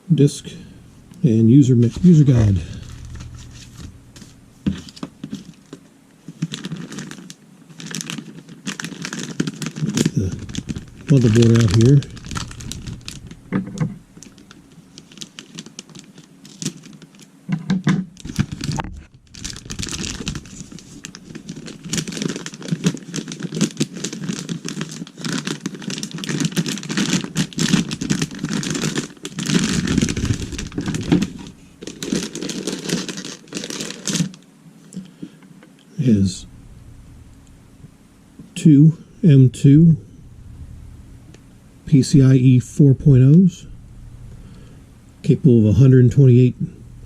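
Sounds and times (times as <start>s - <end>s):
plastic bag and cardboard rustling: 1.3s - 34.4s.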